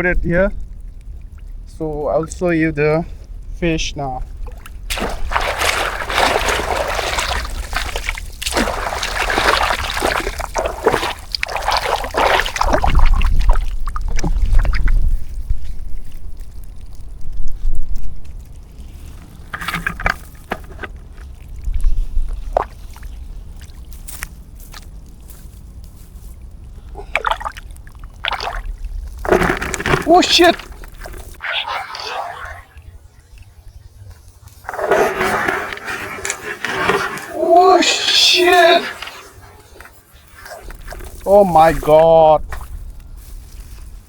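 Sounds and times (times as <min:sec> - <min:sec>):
water splashing and pouring: 0:04.3 - 0:15.3, 0:18.2 - 0:25.4, 0:26.5 - 0:32.8, 0:34.6 - 0:42.8.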